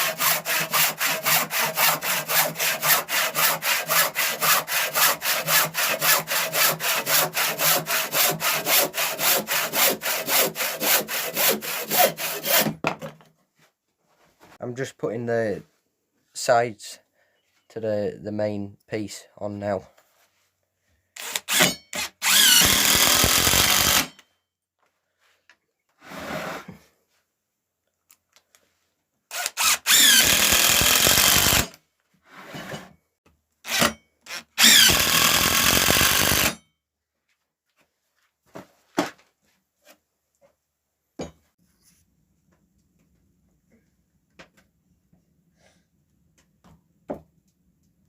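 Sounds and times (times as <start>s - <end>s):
power drill driving screws into wood: 21.2s - 24.2s, 29.3s - 31.8s, 33.6s - 36.6s.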